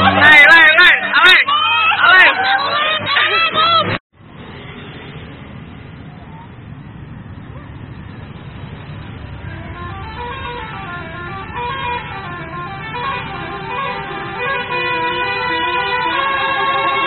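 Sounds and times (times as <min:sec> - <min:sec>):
low bus rumble: 0:05.2 - 0:17.0
bus air horn melody: 0:09.4 - 0:17.0.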